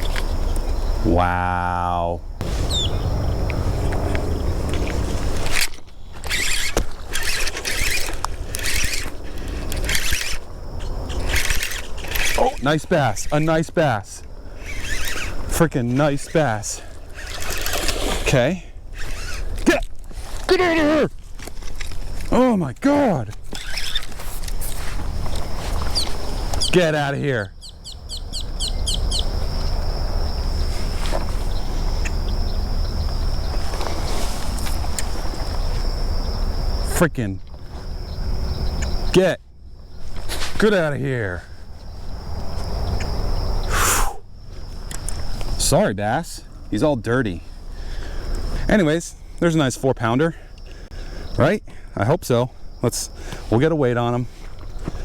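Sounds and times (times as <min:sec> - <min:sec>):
insect droning: 0:00.0 - 0:55.0
low microphone rumble: 0:02.2 - 0:05.6
fishing reel cranking: 0:05.4 - 0:09.1, 0:17.2 - 0:18.1.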